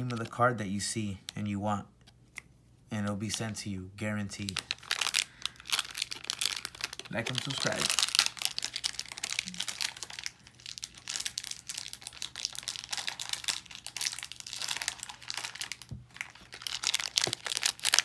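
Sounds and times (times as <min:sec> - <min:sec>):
plastic wrapper crinkling: 0:00.0 - 0:00.4, 0:04.3 - 0:18.0.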